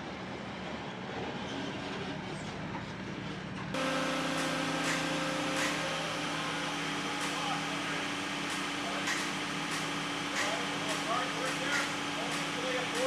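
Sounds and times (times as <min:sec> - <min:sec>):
skid steer engine rumbling: 0:03.7 - 0:13.0
electric hum with fixed tones: 0:03.8 - 0:10.4.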